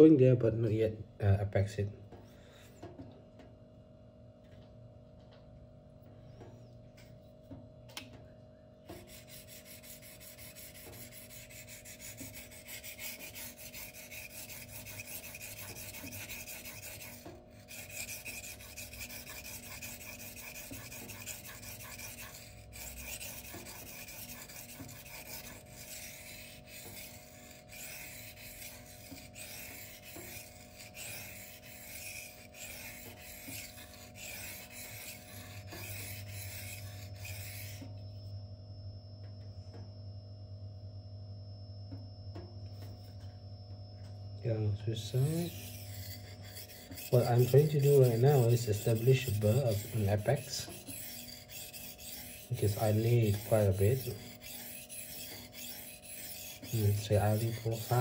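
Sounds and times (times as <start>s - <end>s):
knife scraping on whetstone: 8.9s - 37.9s, 45.0s - 58.0s.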